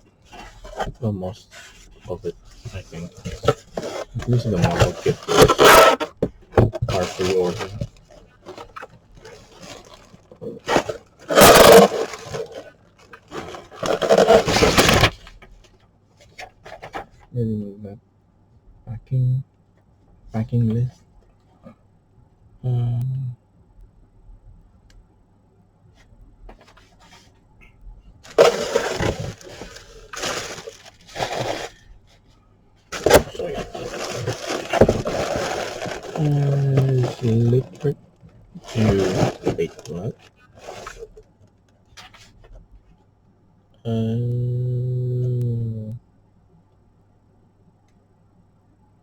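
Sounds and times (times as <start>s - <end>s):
faint handling noise: 0.0s - 17.3s, 25.9s - 43.1s
box packing scraping and rustling: 0.3s - 1.0s, 1.6s - 15.6s, 28.2s - 31.8s, 32.9s - 38.0s, 38.6s - 41.2s.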